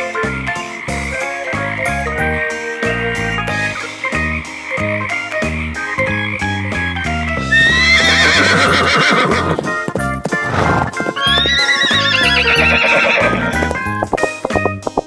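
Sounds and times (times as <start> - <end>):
plucked-string music: 0.0 - 15.0
horse whinnying: 7.4 - 9.6, 10.4 - 13.6.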